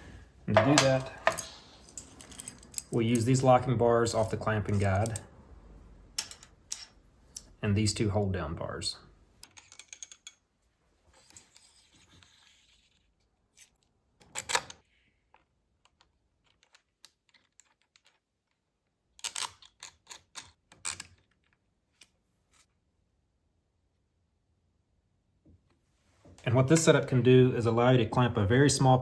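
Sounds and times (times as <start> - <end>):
metal bars clicking and tapping: 0.6 - 3.4.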